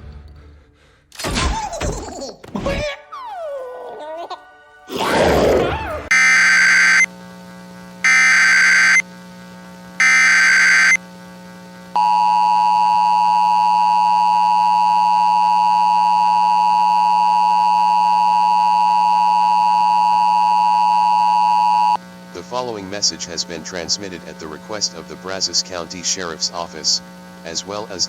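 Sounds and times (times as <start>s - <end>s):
digital data burst warble: 6.1s - 7.1s
two-tone alert signal: 6.1s - 7.1s, 8.1s - 9.0s, 10.0s - 11.0s.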